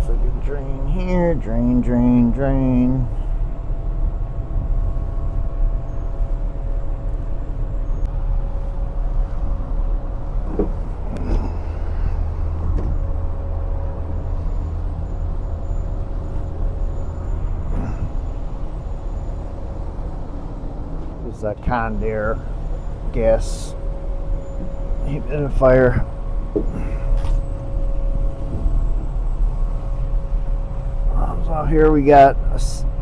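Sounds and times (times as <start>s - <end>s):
faint steady tones: 0.0s - 33.0s
light knocks: 10.5s - 10.9s.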